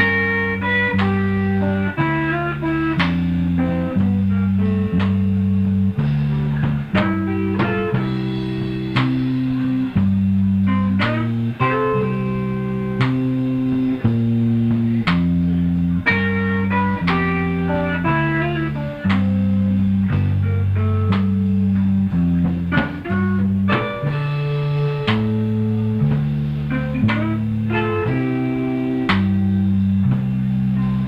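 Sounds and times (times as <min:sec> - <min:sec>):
blues guitar lines: 0:00.0 - 0:31.0
steady bass line: 0:00.0 - 0:31.0.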